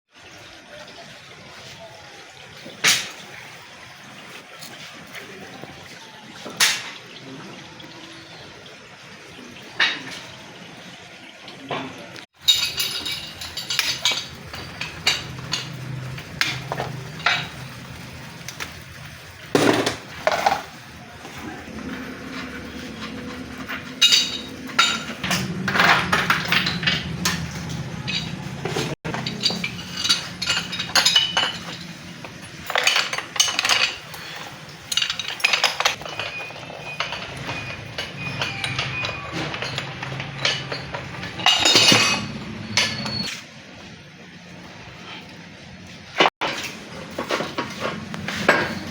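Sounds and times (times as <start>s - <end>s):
metal tools clinking: 12.4s - 19.0s, 21.7s - 43.3s.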